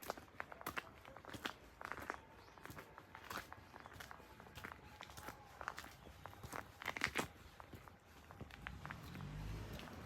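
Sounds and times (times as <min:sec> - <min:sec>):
crunching footsteps: 0:00.0 - 0:10.0.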